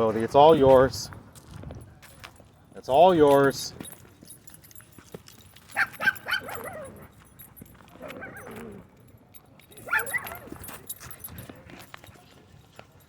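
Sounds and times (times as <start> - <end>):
dog barking and yipping: 5.7 - 7.1, 8.0 - 8.8, 9.8 - 10.7.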